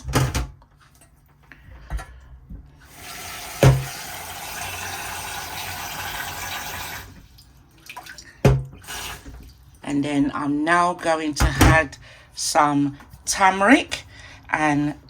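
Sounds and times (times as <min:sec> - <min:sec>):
tap water running into a pot: 0:02.8 - 0:09.7.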